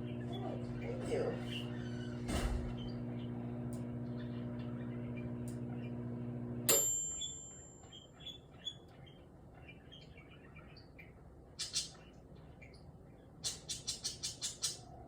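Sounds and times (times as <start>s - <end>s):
microwave oven humming: 0.0s - 9.0s
microwave click: 1.6s - 7.7s
microwave ding: 3.6s - 8.4s.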